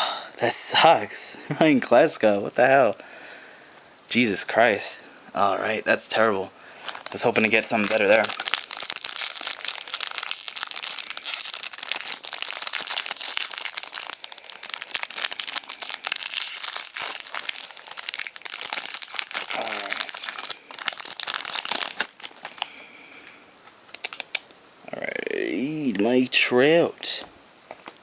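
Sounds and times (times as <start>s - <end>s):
cards rustling: 6.8s - 22.7s
wrapper crinkling and tearing: 6.8s - 22.8s, 23.9s - 24.4s.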